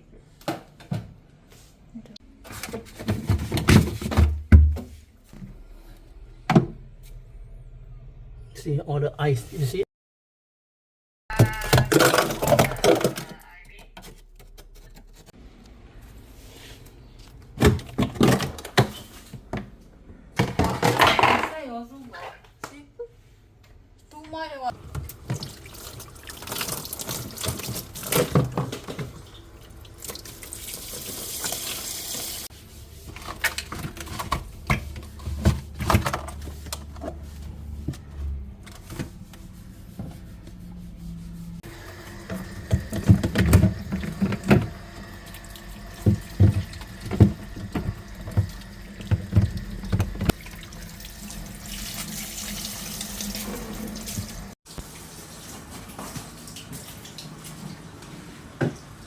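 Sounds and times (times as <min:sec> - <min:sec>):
ice knocking and clattering: 0:11.3 - 0:13.4
running water splashing: 0:25.0 - 0:32.5, 0:41.6 - 0:58.2.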